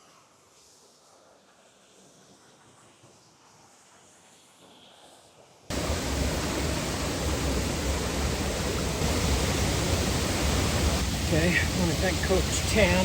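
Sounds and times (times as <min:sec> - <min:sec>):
waterfall rushing: 0:05.7 - 0:13.0.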